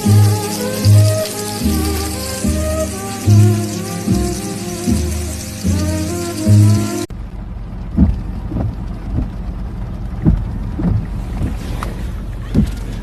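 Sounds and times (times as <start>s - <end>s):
background music: 0.0s - 7.1s
vehicle rumbling: 0.0s - 13.0s
soft thumps: 8.0s - 9.4s, 10.2s - 13.0s.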